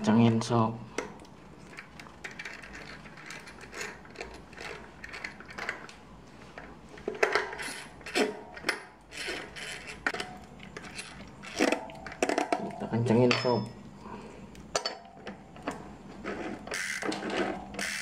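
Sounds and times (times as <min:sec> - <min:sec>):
metal tools clicking and clinking: 0:01.6 - 0:05.9, 0:07.1 - 0:13.9.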